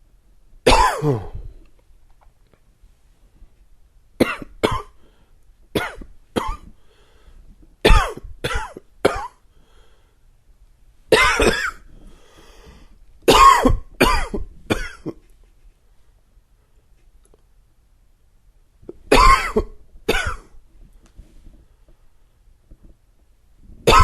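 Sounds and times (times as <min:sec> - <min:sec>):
man coughing: 0:00.7 - 0:01.5, 0:04.2 - 0:05.0, 0:05.8 - 0:06.7, 0:07.8 - 0:09.4, 0:11.1 - 0:11.9, 0:13.3 - 0:15.2, 0:18.9 - 0:20.5.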